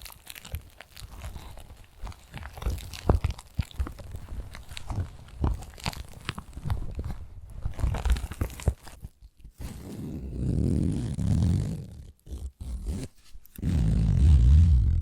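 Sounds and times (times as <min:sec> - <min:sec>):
fingertips tapping microphone: 0:00.0 - 0:09.7.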